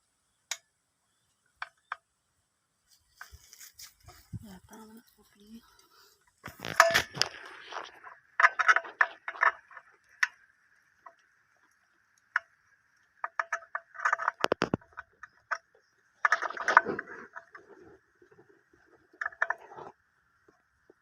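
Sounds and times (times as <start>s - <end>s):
hard parts clicking and knocking: 6.2s - 17.6s.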